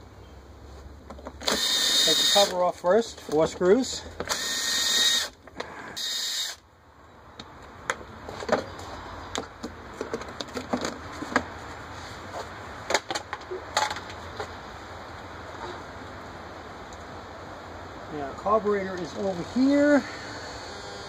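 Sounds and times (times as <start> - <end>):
power drill whirring: 1.4 - 2.6, 4.3 - 5.4, 6.0 - 6.6, 19.4 - 21.0.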